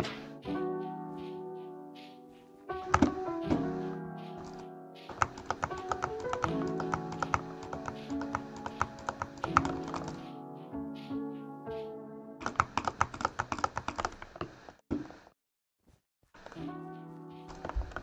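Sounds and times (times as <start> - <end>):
background music: 0.0 - 12.8, 16.6 - 18.0
mechanical keyboard typing: 5.1 - 10.2, 12.4 - 14.5, 17.5 - 18.0.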